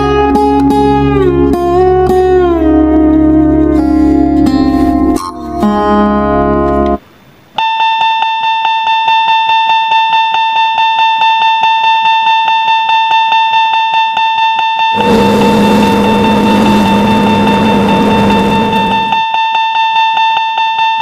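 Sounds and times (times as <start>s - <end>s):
music: 0.0s - 7.0s, 7.6s - 21.0s
train rumble: 15.0s - 19.2s.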